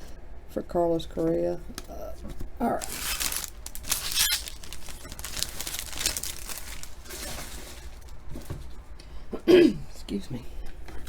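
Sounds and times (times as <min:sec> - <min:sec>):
plastic wrapper crinkling: 0:02.8 - 0:08.2.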